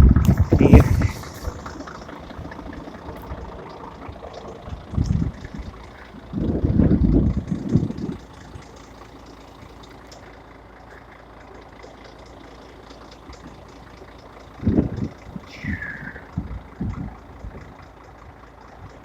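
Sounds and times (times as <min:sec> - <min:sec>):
wind buffeting microphone: 0:00.0 - 0:08.8, 0:14.5 - 0:18.0.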